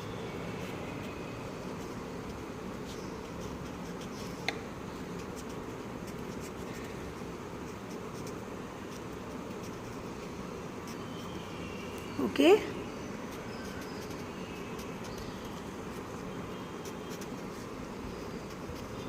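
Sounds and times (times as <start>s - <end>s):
steady background hiss: 0.0s - 19.0s
pen scratching on paper: 1.8s - 4.5s, 5.1s - 11.3s, 13.3s - 19.0s.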